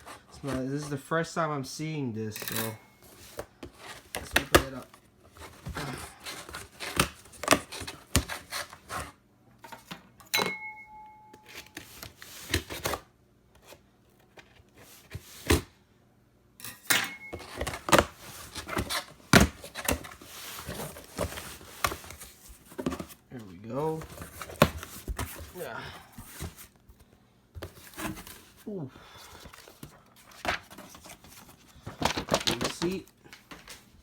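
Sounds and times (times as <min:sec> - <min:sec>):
cardboard box being handled: 0:17.4 - 0:27.0, 0:27.6 - 0:28.7
packaging rustling: 0:17.4 - 0:27.0, 0:27.6 - 0:34.0.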